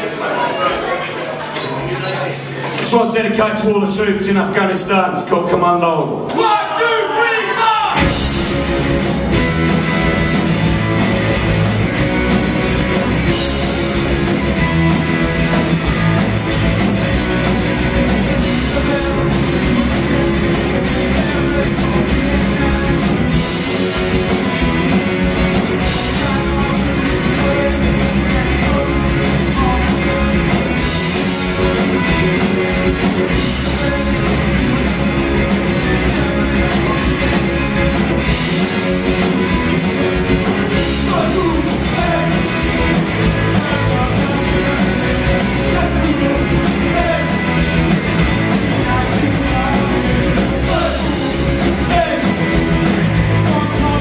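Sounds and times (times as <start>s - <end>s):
distorted guitar: 7.8s - 54.0s
drums with cymbal hits: 7.9s - 54.0s
person singing: 18.4s - 38.0s, 40.4s - 47.8s, 48.5s - 52.6s, 53.2s - 54.0s.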